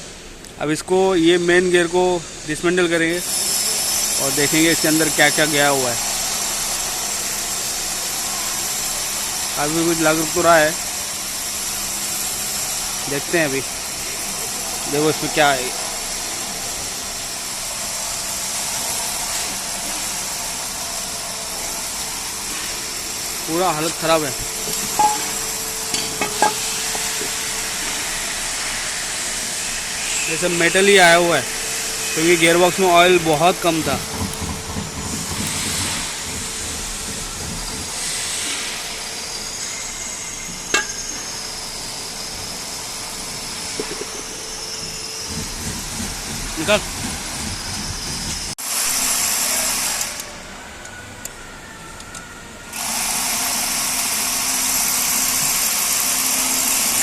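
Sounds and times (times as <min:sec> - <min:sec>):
steady hiss: 0:17.0 - 0:49.6.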